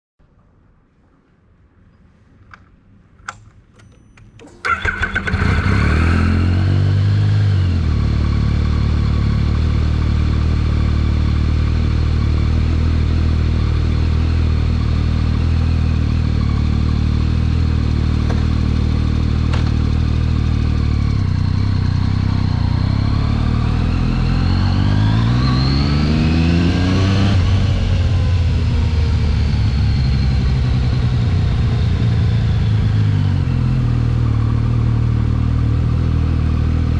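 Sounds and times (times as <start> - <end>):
motorcycle engine starting and idling: 3.3 - 26.3, 27.2 - 36.9
motorcycle engine revving: 4.6 - 36.9.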